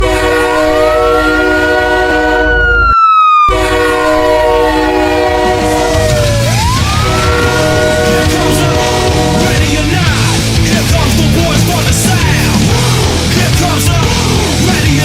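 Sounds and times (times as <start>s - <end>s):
goal horn blaring: 0.0s - 10.1s
siren rising and falling: 0.6s - 9.7s.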